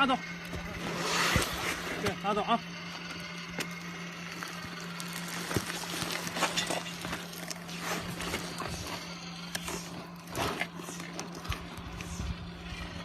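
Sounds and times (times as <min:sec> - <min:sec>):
welding machine humming: 0:00.0 - 0:13.0
scuffs and crinkles of plastic: 0:04.2 - 0:11.8.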